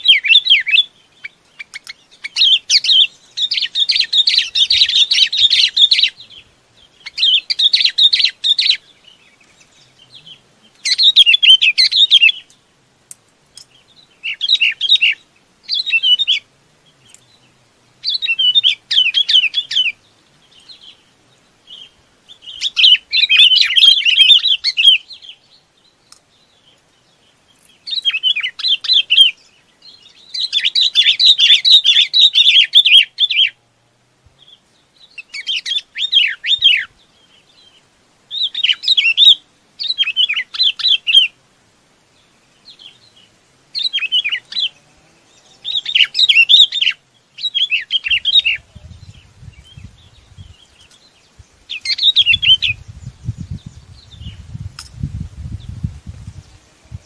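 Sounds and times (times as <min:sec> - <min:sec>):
bird chattering warbling calls: 0:00.0 - 0:12.6, 0:13.6 - 0:17.2, 0:18.0 - 0:21.0, 0:21.7 - 0:25.4, 0:27.8 - 0:33.6, 0:35.1 - 0:37.0, 0:37.7 - 0:41.4, 0:42.6 - 0:51.0, 0:51.7 - 0:54.6.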